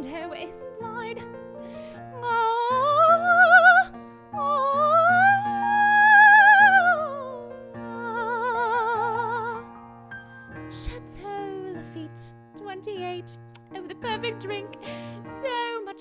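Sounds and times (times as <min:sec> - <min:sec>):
woman singing with vibrato: 0:02.2 - 0:09.7.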